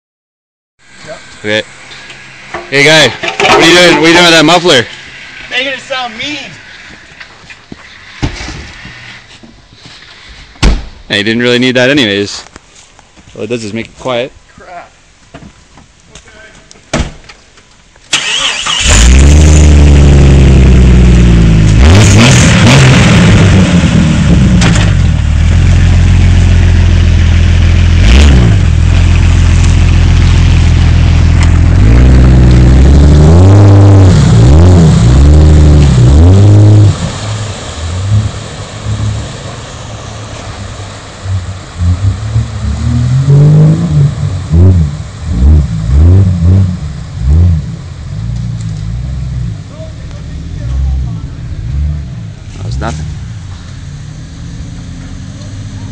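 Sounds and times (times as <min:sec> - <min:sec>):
car engine revving without muffler: 0:18.2 - 0:55.9.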